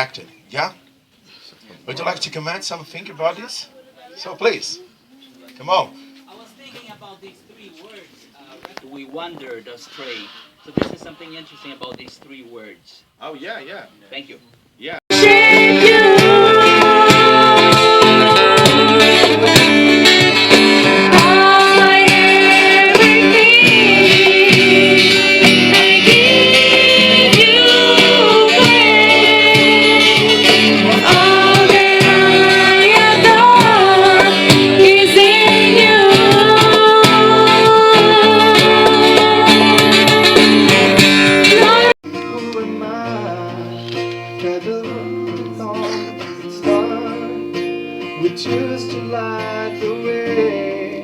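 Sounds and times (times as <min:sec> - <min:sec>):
person singing melody: 0:15.1 - 0:51.0
worship song with guitar: 0:15.1 - 0:51.0.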